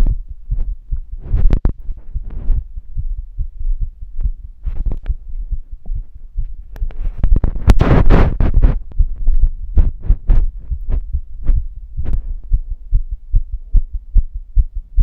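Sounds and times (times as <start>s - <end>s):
heartbeat thumps: 0.0s - 15.0s
rustling against microphone: 0.6s - 2.8s, 4.6s - 12.6s.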